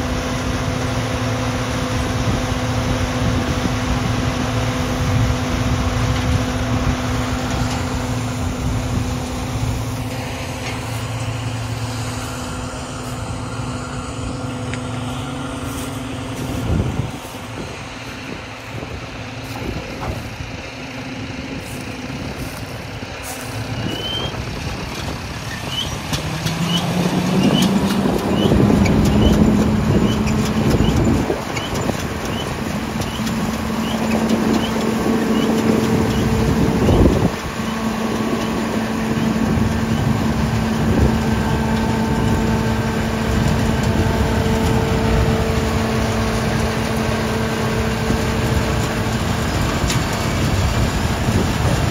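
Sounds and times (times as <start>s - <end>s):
harvester machinery humming: 0.0s - 51.9s.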